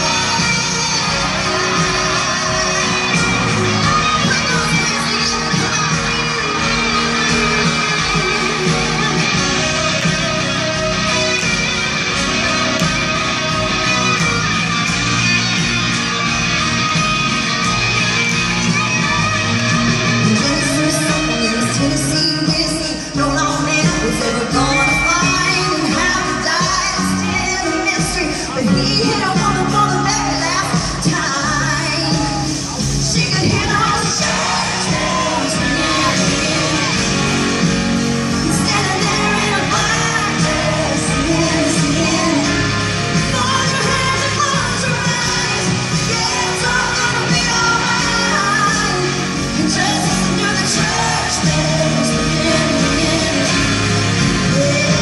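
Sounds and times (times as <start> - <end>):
woman singing: 0.0 - 14.2, 17.6 - 55.0
country-rock band playing: 0.0 - 55.0
electric guitar: 0.0 - 55.0.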